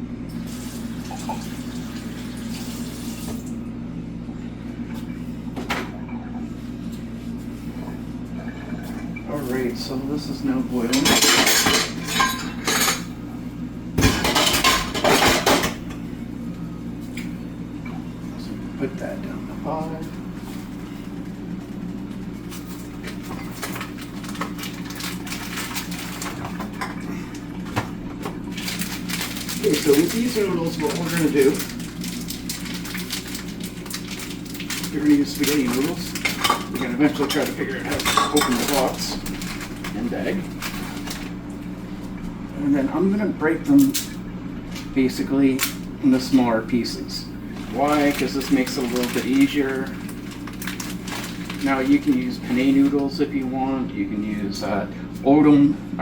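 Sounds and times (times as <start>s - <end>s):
water boiling in a pot: 0.0s - 3.6s, 16.8s - 43.8s, 45.0s - 53.9s
steady low hum: 0.0s - 56.0s
pots and utensils clinking: 10.8s - 13.1s, 14.0s - 16.0s, 28.5s - 41.4s, 47.6s - 53.0s.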